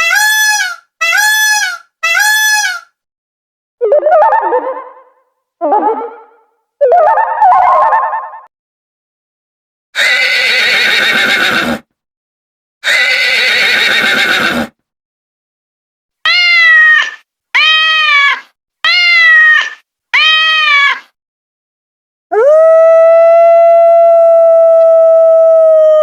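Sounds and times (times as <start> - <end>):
horse whinnying: 10.0 - 11.8, 12.8 - 14.7.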